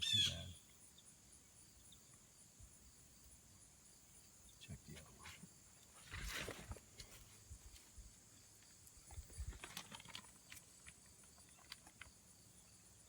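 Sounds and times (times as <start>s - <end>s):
small clicks and knocks: 9.0s - 12.2s.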